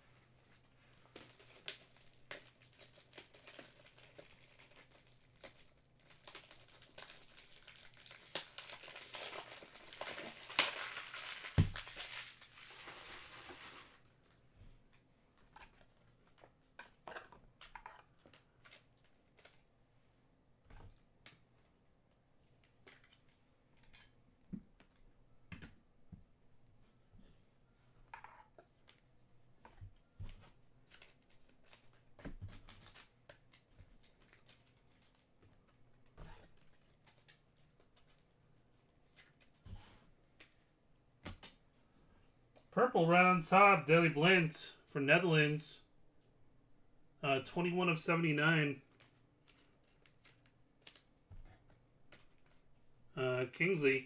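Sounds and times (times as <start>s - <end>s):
card pack wrapper crinkling: 1.1s - 14.0s.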